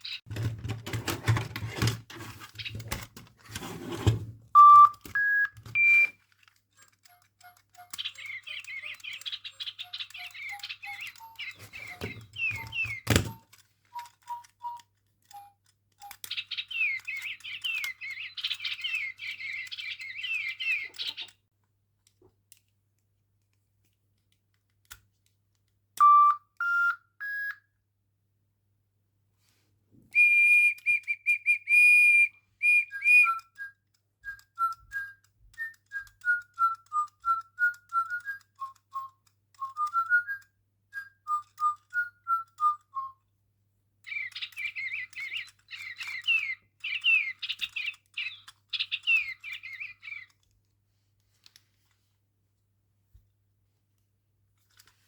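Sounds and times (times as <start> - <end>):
electronic toy bird chirping: 0.0 - 0.2, 4.6 - 21.4, 26.0 - 27.8, 30.2 - 43.2, 44.0 - 50.4.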